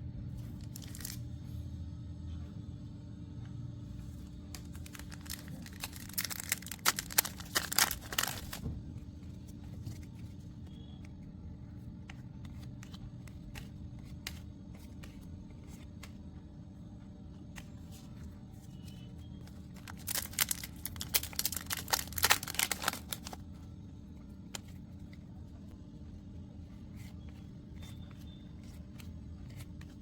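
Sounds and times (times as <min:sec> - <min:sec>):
steady low hum: 0:00.0 - 0:30.0
foil wrapper crinkling and tearing: 0:00.5 - 0:01.2, 0:04.6 - 0:08.6, 0:19.5 - 0:23.4.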